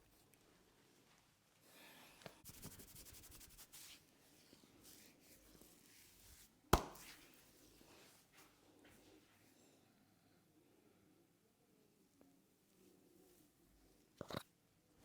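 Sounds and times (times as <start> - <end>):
hands rubbing hair and scalp: 2.4 - 4.0, 4.8 - 7.4.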